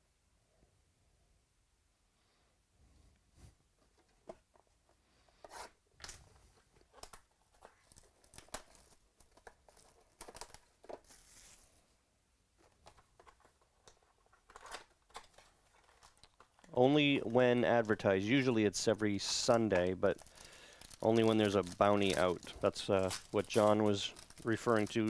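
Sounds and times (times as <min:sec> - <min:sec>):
wrapper tearing and crinkling: 0:06.8 - 0:11.8, 0:12.9 - 0:25.0.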